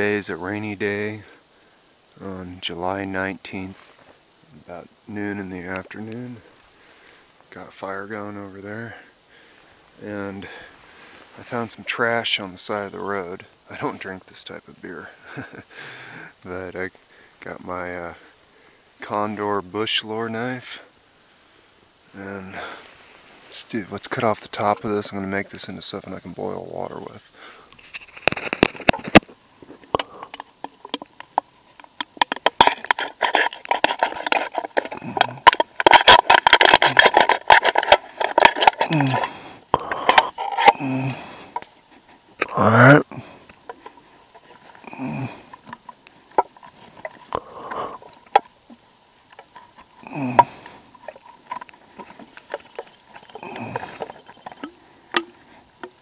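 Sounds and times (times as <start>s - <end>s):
thin metal clicks and crinkles: 27.7s - 39.3s, 39.9s - 40.8s, 49.3s - 56.0s.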